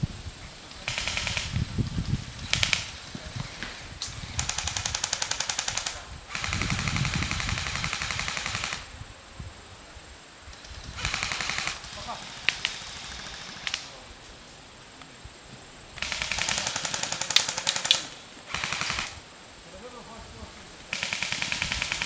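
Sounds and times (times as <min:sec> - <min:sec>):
airsoft guns firing bursts: 0:00.8 - 0:01.6, 0:02.4 - 0:03.0, 0:04.4 - 0:08.9, 0:10.9 - 0:13.9, 0:16.0 - 0:19.2, 0:20.9 - 0:22.0.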